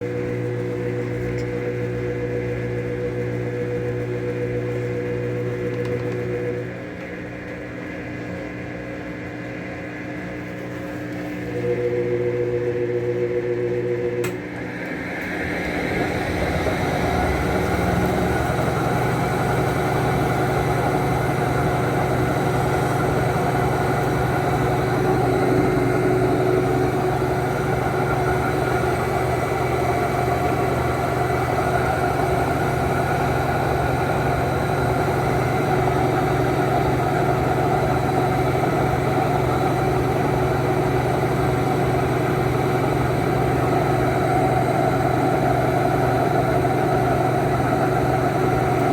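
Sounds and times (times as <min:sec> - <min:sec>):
washing machine motor hum: 0:00.0 - 0:48.9.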